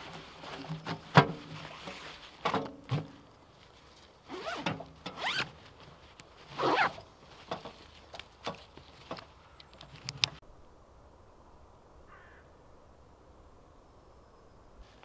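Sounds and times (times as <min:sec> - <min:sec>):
zipper pulled: 0:04.3 - 0:05.5, 0:06.5 - 0:07.0.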